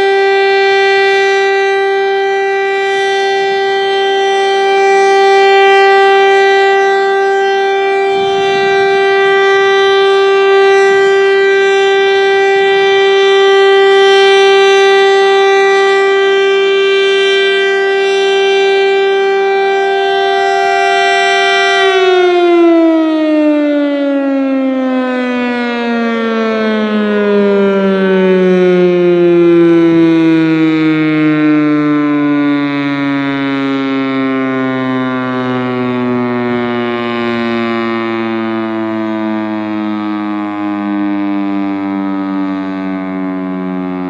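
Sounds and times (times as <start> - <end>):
warning siren steady tone: 0.0 - 44.0.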